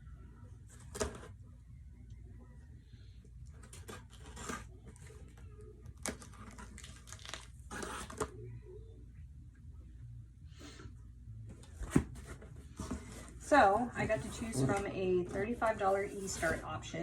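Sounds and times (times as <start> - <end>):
packaging rustling and crinkling: 6.0 - 8.3.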